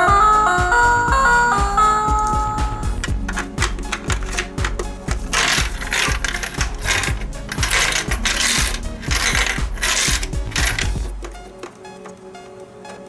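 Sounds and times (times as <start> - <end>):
background music: 0.0 - 13.0
plastic toy mechanism ratcheting: 3.3 - 11.0.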